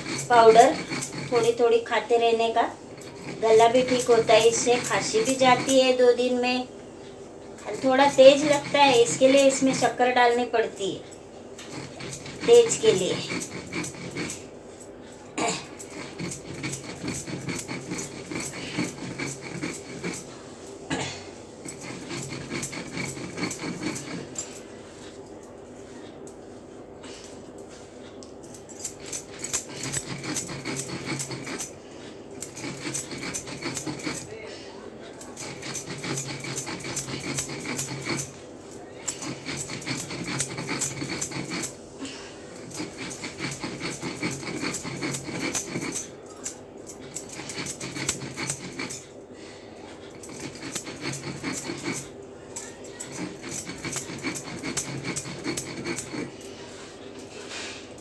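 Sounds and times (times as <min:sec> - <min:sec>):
stone grinding on stone slab: 0:00.0 - 0:01.6, 0:15.9 - 0:20.3, 0:21.8 - 0:24.4, 0:28.9 - 0:31.8, 0:32.5 - 0:34.2, 0:35.4 - 0:38.4, 0:42.8 - 0:45.9, 0:50.4 - 0:51.9.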